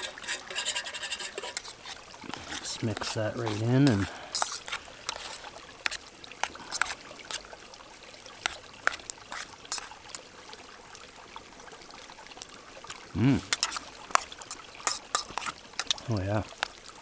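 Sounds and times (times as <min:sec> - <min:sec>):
utensil stirring in metal pot: 0:00.0 - 0:07.5, 0:08.4 - 0:10.2, 0:13.4 - 0:17.0
river trickling: 0:00.0 - 0:17.0.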